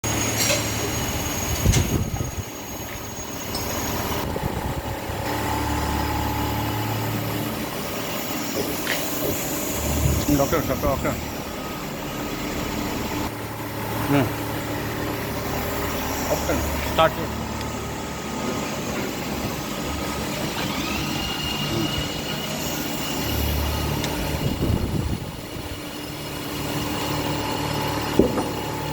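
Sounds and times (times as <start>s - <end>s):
high machine whine: 0.0s - 28.9s
motor hum: 0.0s - 28.9s.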